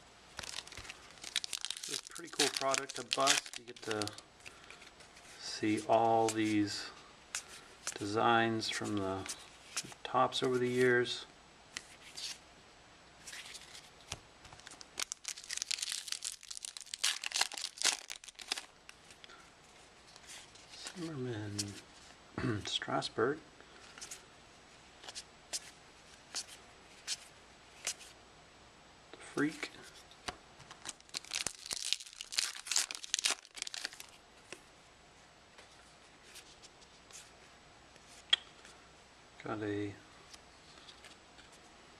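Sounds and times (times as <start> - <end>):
wrapper crinkling and tearing: 0.3 - 4.7, 14.6 - 19.2, 30.7 - 34.2.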